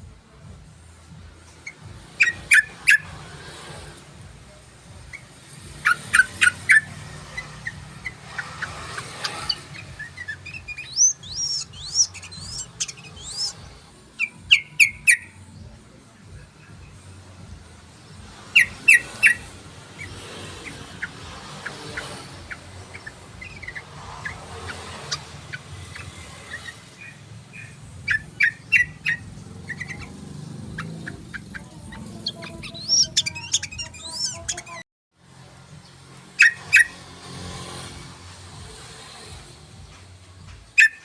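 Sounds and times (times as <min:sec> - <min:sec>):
bulbul chirping: 0:01.5 - 0:03.7, 0:04.6 - 0:15.6, 0:17.1 - 0:34.8.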